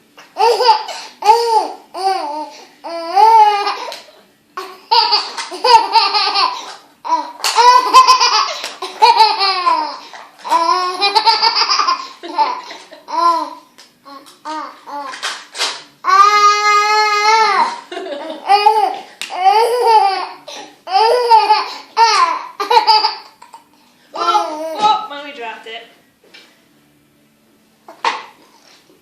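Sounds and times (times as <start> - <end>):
baby laughing and squealing: 0.2 - 4.0, 4.8 - 15.2, 16.1 - 23.5.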